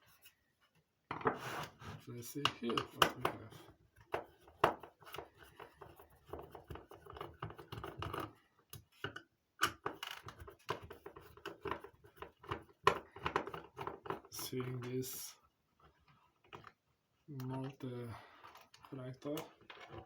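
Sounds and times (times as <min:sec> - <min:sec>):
clicks and taps of plastic parts: 0:02.4 - 0:14.9.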